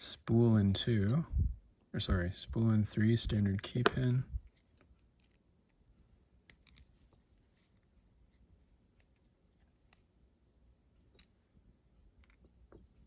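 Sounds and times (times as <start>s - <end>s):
faint small metal clicks: 6.4s - 7.9s.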